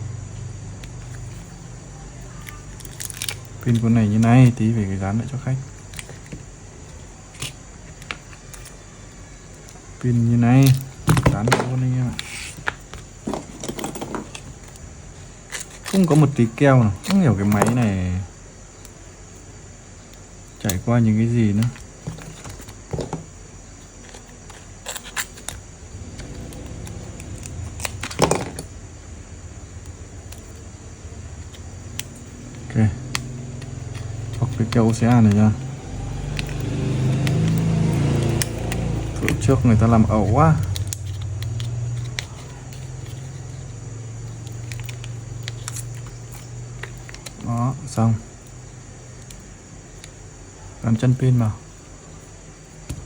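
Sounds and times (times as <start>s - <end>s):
low steady hum: 0.0s - 53.0s
small tools clicking and clattering: 2.2s - 4.6s, 5.7s - 8.9s, 10.6s - 14.9s, 15.5s - 16.4s, 17.0s - 17.9s, 21.6s - 28.7s, 36.2s - 47.7s.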